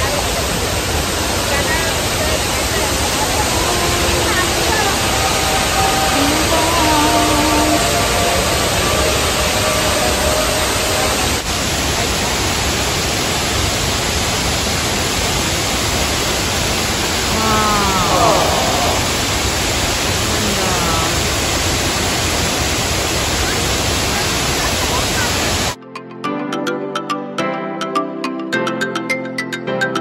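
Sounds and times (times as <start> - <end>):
waterfall rushing: 0.0 - 25.8
faint voice: 1.5 - 8.0, 17.2 - 22.0.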